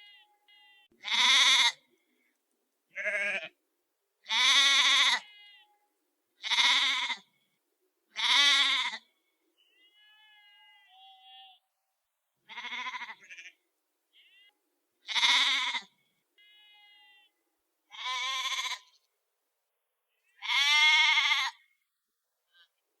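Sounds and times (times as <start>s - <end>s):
sheep bleating: 0.0s - 1.8s, 2.9s - 3.6s, 4.3s - 5.8s, 6.4s - 7.3s, 8.1s - 11.6s, 12.4s - 19.0s, 20.4s - 21.7s.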